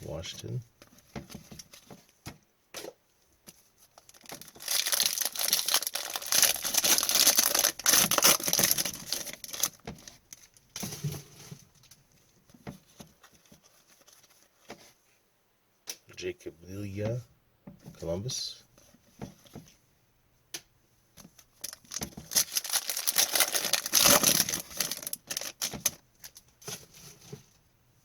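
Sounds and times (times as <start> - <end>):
wrapper tearing and crinkling: 3.9 - 10.6, 21.6 - 26.4.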